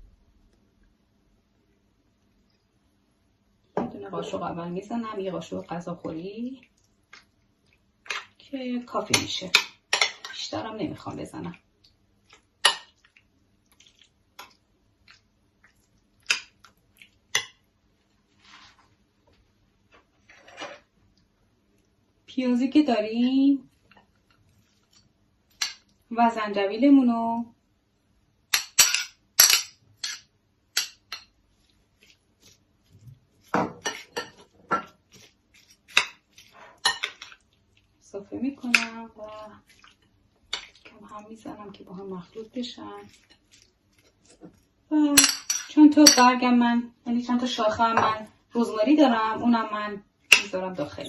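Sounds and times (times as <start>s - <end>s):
soft rustle: 18.0s - 20.9s, 31.4s - 38.0s
utensils clinking on a bowl: 28.5s - 31.4s, 33.4s - 37.4s, 41.7s - 46.4s.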